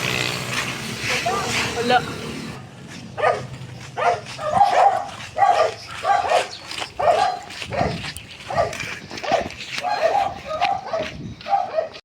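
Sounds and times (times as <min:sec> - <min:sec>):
dog barking: 0:01.1 - 0:01.8, 0:03.2 - 0:12.0.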